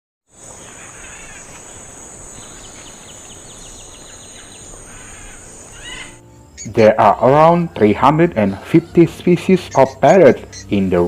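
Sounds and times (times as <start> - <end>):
high-pitched insect drone: 0.4 - 6.8
bird calls: 0.4 - 11.0.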